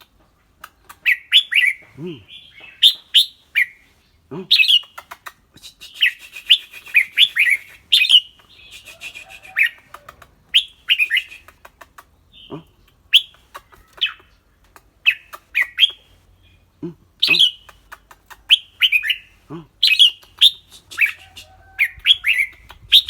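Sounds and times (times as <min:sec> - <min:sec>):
bird rapid chattering: 0:04.5 - 0:16.0, 0:17.2 - 0:19.2, 0:19.8 - 0:23.0
bird whistled chirps: 0:05.9 - 0:09.5.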